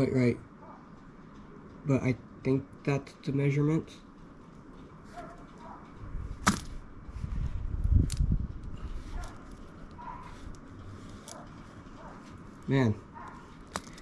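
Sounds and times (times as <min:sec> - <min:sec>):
handling rustling: 0:04.2 - 0:14.0.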